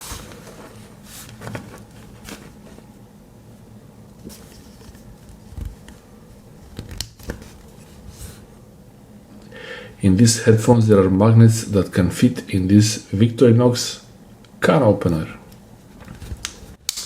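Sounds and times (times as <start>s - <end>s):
faint steady background noise: 0.0s - 17.0s.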